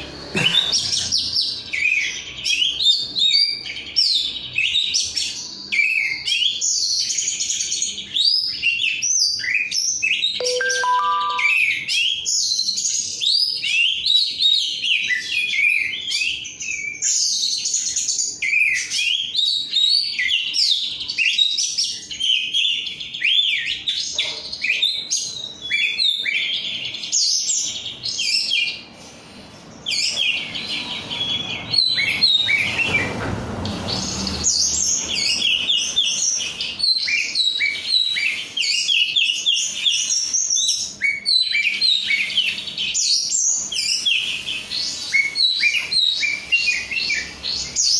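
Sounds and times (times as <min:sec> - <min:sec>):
bird singing whistled phrases: 0:08.2 - 0:12.2.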